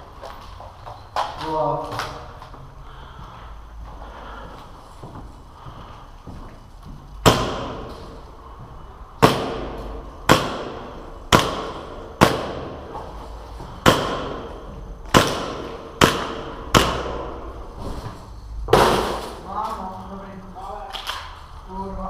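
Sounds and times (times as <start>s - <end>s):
airsoft gun shots echoing: 7.2s - 8.0s, 9.2s - 12.9s, 13.8s - 17.4s.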